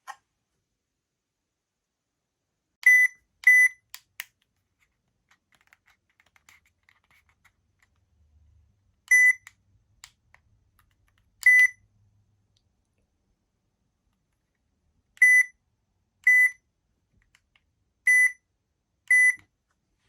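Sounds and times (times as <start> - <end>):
short electronic beeps: 2.8 - 3.8, 9.1 - 9.4, 11.4 - 11.8, 15.2 - 15.5, 16.3 - 16.6, 18.1 - 18.4, 19.1 - 19.4.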